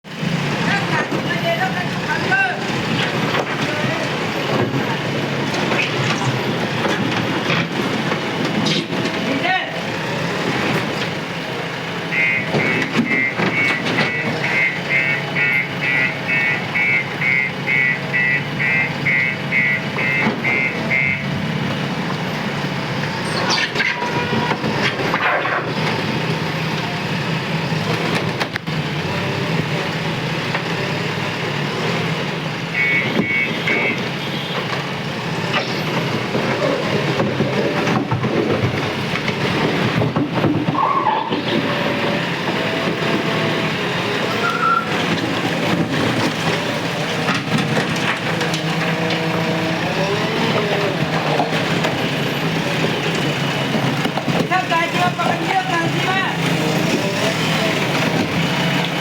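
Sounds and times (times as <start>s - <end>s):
heavy machinery running: 0.1s - 59.0s
reversing alarm beeping: 12.1s - 21.4s, 32.6s - 34.6s, 41.7s - 45.0s.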